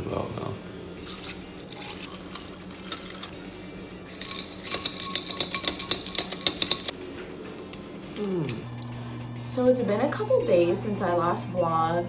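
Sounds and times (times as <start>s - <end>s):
spoon stirring in a glass: 1.0s - 3.4s, 4.1s - 6.9s
spoon clinking against glass: 1.1s - 3.4s, 4.1s - 6.9s.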